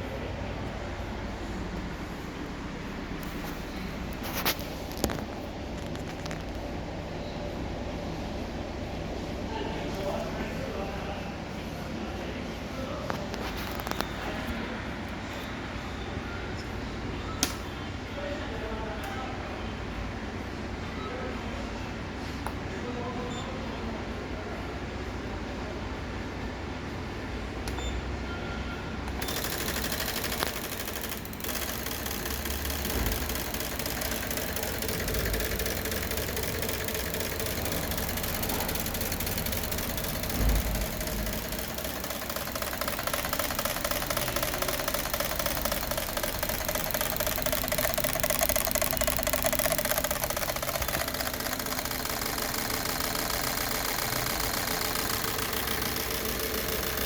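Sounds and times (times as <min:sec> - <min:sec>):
car engine idling: 0:29.2 - 0:57.0.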